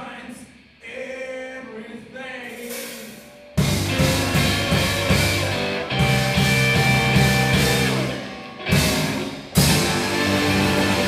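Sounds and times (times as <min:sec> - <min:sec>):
rock band music: 0:02.6 - 0:11.0.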